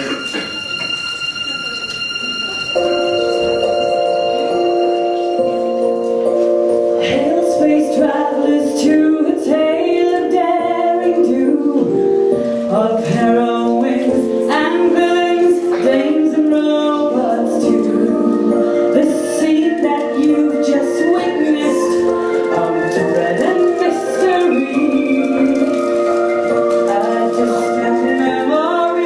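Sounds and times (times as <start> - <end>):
backing music: 0.0 - 29.0
women singing: 7.0 - 29.0.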